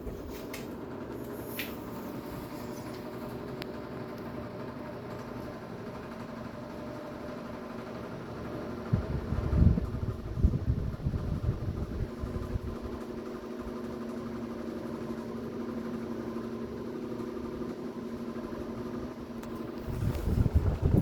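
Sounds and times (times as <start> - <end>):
fan motor hum: 0.0 - 21.0
wind buffeting microphone: 8.9 - 13.0, 19.8 - 21.0.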